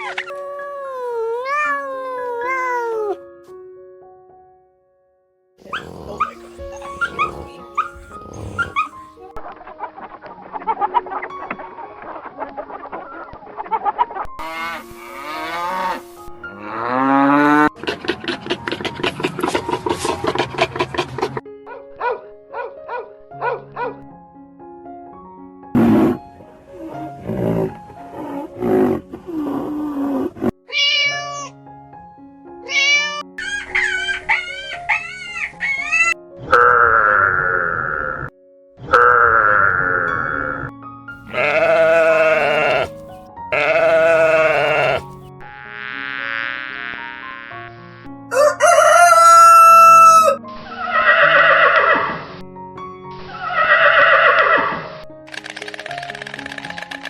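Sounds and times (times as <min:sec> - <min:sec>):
kitten mewing: 0:00.0 - 0:03.2, 0:30.7 - 0:31.5, 0:41.3 - 0:42.9, 0:43.6 - 0:45.0
background music: 0:00.0 - 0:57.0
different animal call: 0:05.6 - 0:09.1, 0:14.4 - 0:17.7, 0:32.7 - 0:47.6, 0:48.3 - 0:52.2, 0:53.3 - 0:54.8
lower animal calls: 0:05.7 - 0:09.1, 0:41.3 - 0:42.9, 0:43.5 - 0:45.1
rooster crowing: 0:48.3 - 0:50.4.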